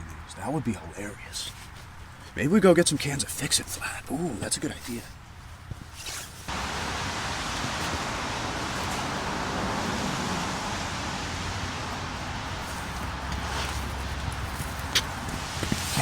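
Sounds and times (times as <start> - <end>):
steady rushing noise: 6.5 - 16.0.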